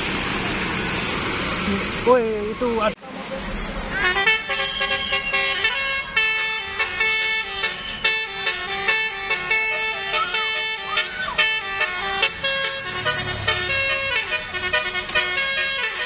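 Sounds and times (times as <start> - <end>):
musical bus horn tune: 3.9 - 16.0.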